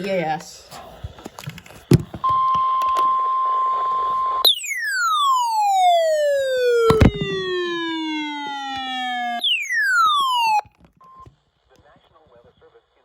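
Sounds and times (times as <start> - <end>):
steady alert tone: 4.5 - 10.6
electronic tone falling in pitch: 4.5 - 10.7.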